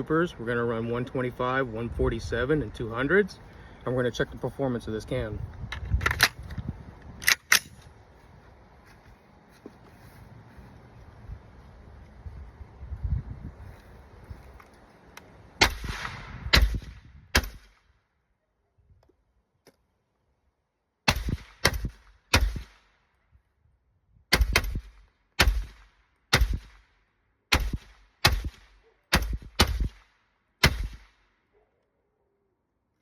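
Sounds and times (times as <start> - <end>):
suppressed rifle shots: 15.6 - 17.8, 24.3 - 26.8, 27.5 - 31.2.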